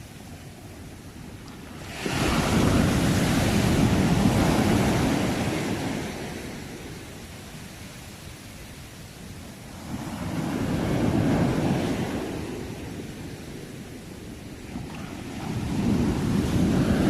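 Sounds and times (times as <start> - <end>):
low surf hiss: 0.0 - 17.0
sea wave crashing: 1.7 - 7.0.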